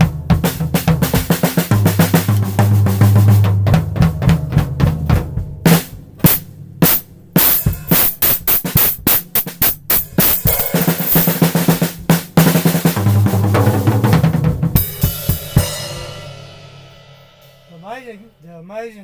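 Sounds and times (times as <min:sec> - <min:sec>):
kick drum: 0:00.0 - 0:10.7
snare drum strokes: 0:00.0 - 0:15.5
tom drum fill: 0:00.0 - 0:18.4
distorted hi-hat: 0:05.7 - 0:18.3
cymbals ringing: 0:06.3 - 0:11.8.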